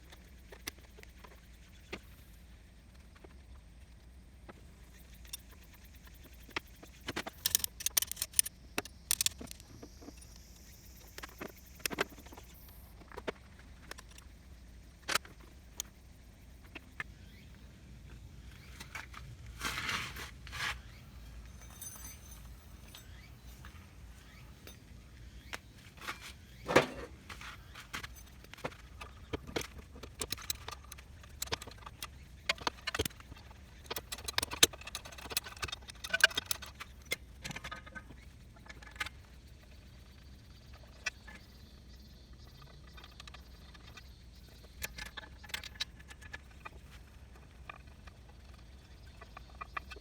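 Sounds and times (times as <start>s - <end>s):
metallic clinks of hand tools: 7.2s - 9.6s, 21.4s - 23.7s
scraping: 25.9s - 28.4s.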